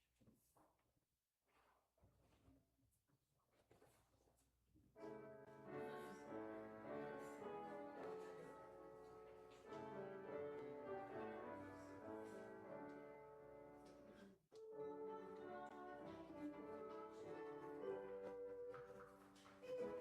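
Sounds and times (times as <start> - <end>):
quiet instrumental music: 5.0 - 20.0.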